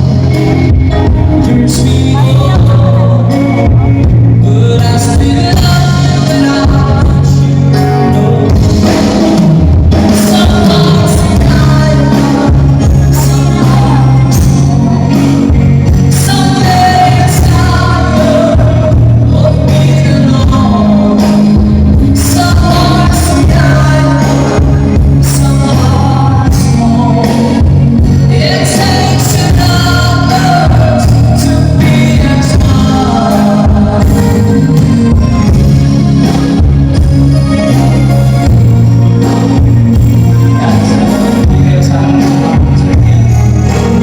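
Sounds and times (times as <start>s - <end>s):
bass and drums: 0.0s - 44.0s
person singing over sound system: 9.9s - 44.0s.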